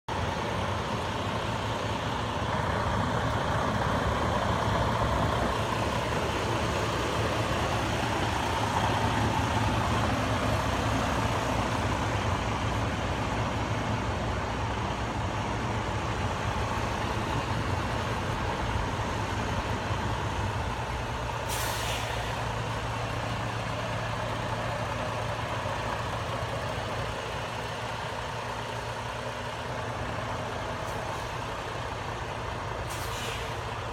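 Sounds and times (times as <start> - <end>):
diesel truck engine running: 0.1 - 33.9
air brake hiss: 21.4 - 22.4, 32.8 - 33.7.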